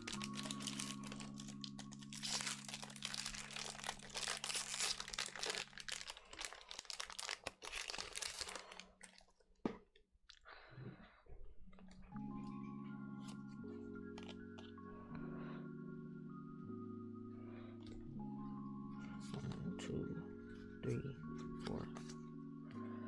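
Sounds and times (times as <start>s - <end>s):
foil wrapper tearing and crinkling: 0.0s - 9.2s.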